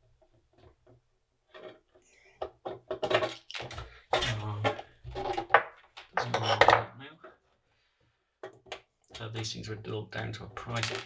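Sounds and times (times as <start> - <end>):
man talking: 4.1 - 4.8, 6.2 - 7.4, 9.2 - 11.0.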